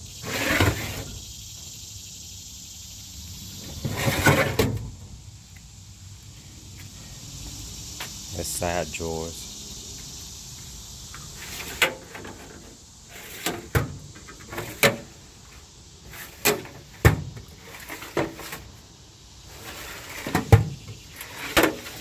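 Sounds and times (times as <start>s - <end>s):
steel drawers clunking shut: 3.8s - 5.0s.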